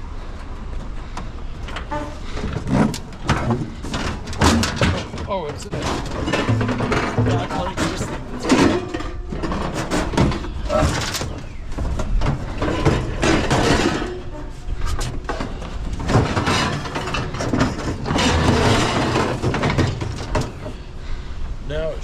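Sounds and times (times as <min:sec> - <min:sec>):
scrap metal clanking and scraping: 0:00.8 - 0:21.3.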